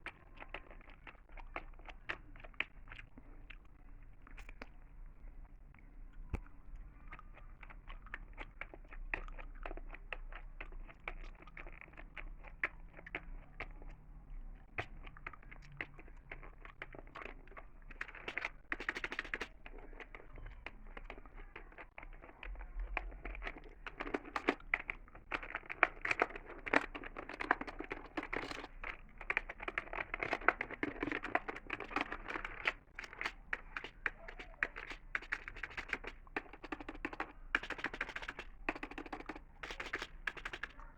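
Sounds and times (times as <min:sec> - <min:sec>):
gum chewing: 0:00.0 - 0:04.9, 0:05.7 - 0:40.9
computer keyboard clicking: 0:14.8 - 0:20.2, 0:20.8 - 0:40.9.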